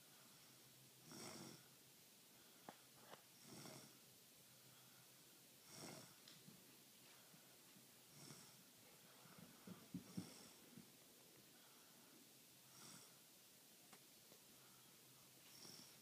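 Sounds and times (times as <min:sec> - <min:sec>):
person snoring faintly: 0:00.4 - 0:01.7, 0:03.4 - 0:04.0, 0:05.6 - 0:06.2, 0:08.1 - 0:10.8, 0:12.7 - 0:13.2, 0:15.4 - 0:16.0.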